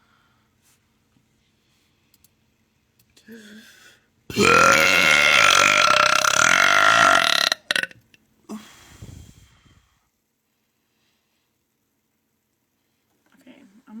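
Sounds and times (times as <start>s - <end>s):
long loud burp: 4.3s - 7.9s.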